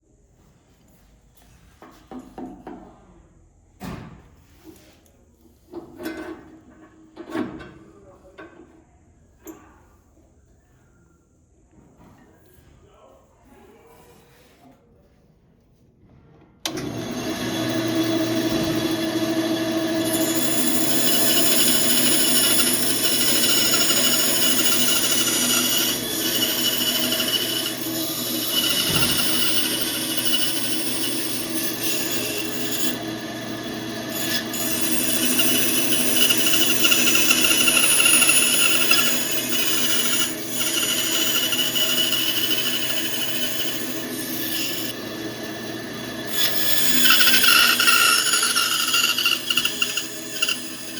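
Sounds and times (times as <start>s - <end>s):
band saw motor hum: 16.7s - 50.9s
saw blade rasping through wood: 17.0s - 50.9s.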